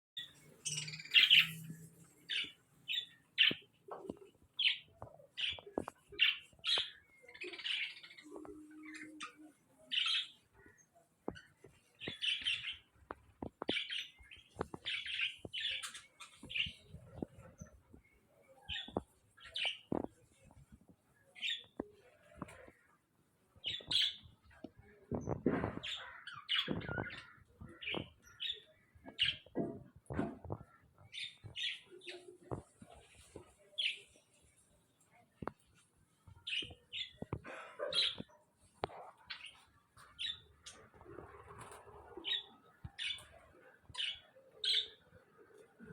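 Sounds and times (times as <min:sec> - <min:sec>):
parrots chirping and squawking: 0:00.3 - 0:04.0, 0:25.2 - 0:32.7, 0:36.5 - 0:45.0.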